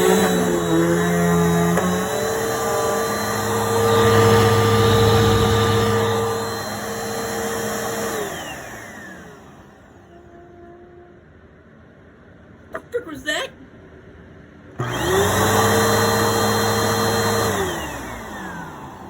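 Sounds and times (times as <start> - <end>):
vacuum cleaner motor whine: 0.0 - 11.2, 14.8 - 19.0.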